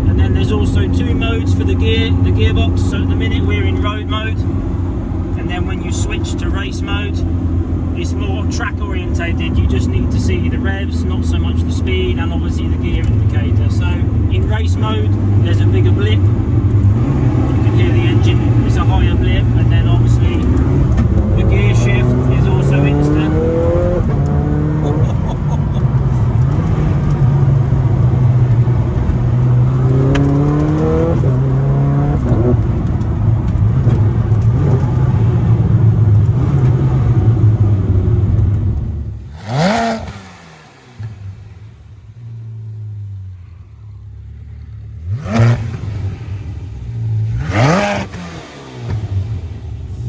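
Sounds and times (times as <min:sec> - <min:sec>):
car engine running under load: 0:00.0 - 0:50.0
engine rev blips: 0:36.3 - 0:43.4, 0:44.9 - 0:50.0.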